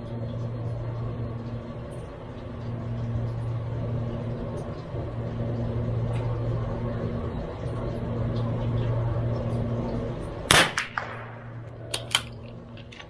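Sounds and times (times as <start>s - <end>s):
steady low hum: 0.0s - 13.0s
rifle shot with echo: 10.5s - 12.4s.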